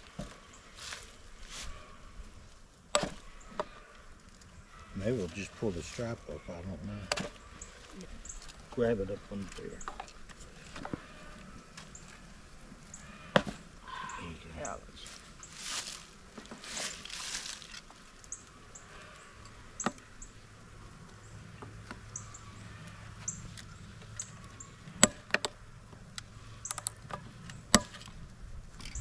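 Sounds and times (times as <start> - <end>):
sharp knocks of wood and metal: 2.9 - 3.8, 7.0 - 7.4, 13.3 - 13.6, 24.9 - 25.6, 27.1 - 28.1.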